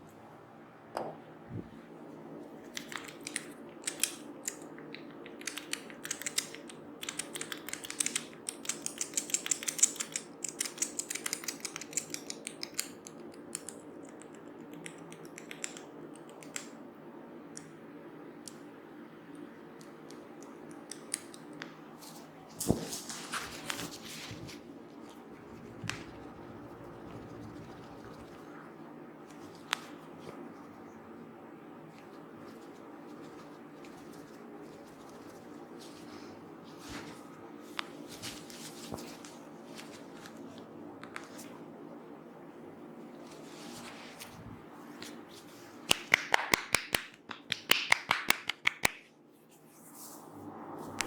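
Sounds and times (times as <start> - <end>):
hands clicking during head massage: 2.8 - 16.7, 45.9 - 49.0.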